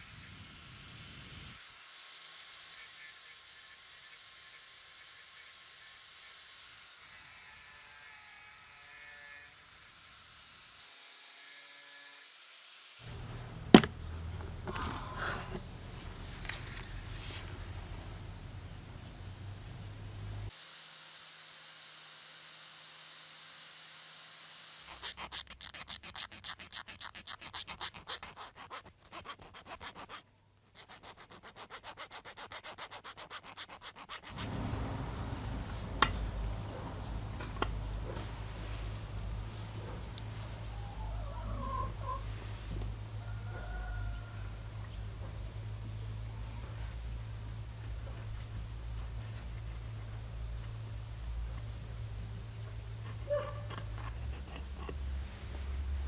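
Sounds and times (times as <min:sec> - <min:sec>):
faint steady hiss: 0:13.1 - 0:20.5
low hum: 0:13.1 - 0:20.5
rapid rubbing strokes by hand: 0:13.1 - 0:20.5, 0:37.8 - 0:42.8.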